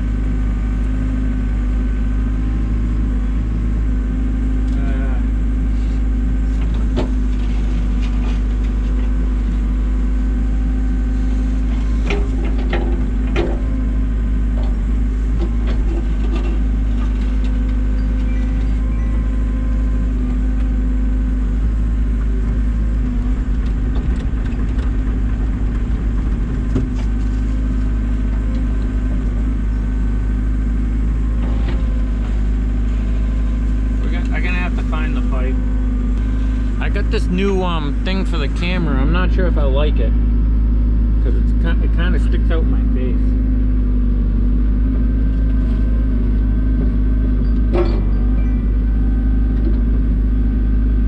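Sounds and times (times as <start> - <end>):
excavator diesel engine running: 0.0 - 51.0
machine knocks and clicks: 22.2 - 29.4.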